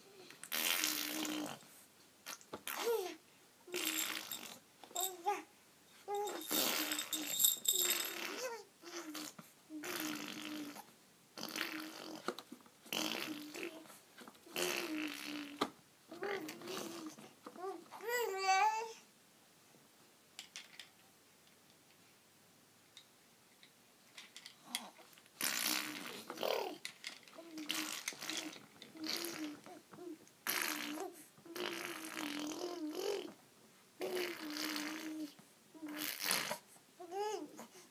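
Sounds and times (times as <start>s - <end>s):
baby making buzzy vocal sounds: 0.1s - 5.5s, 6.1s - 12.3s, 12.9s - 19.0s, 25.4s - 33.4s, 34.0s - 37.8s.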